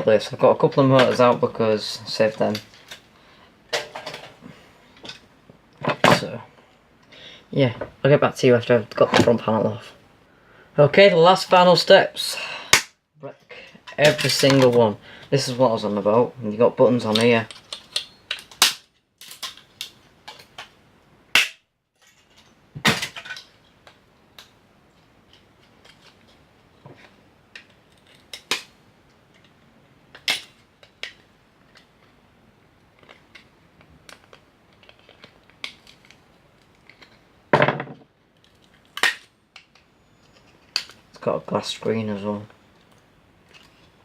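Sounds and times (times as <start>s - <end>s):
hard plastic cracking and snapping: 17.1s - 20.7s, 27.6s - 28.7s, 32.9s - 37.2s, 38.4s - 39.9s, 40.6s - 41.0s.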